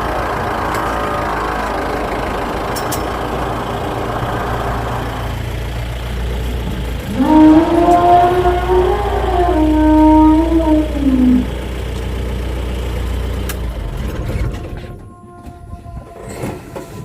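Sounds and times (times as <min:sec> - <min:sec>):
vehicle engine idling: 0:00.0 - 0:16.2
elephant trumpeting: 0:00.7 - 0:05.6, 0:07.0 - 0:11.8.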